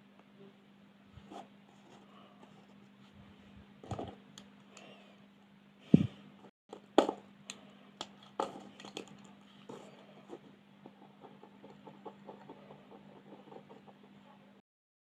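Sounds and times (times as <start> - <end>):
steady low hum: 0.0 - 14.6
pens and pencils tapping: 6.7 - 14.2.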